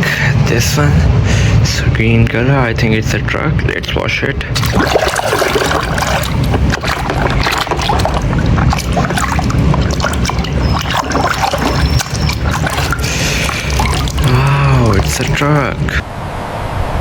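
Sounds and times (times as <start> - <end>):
water sloshing in a bucket: 3.7 - 16.0.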